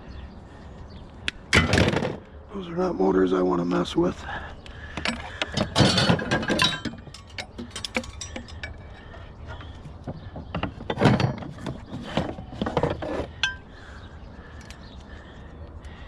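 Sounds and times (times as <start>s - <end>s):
scrap metal clinking and rattling: 4.9s - 13.7s.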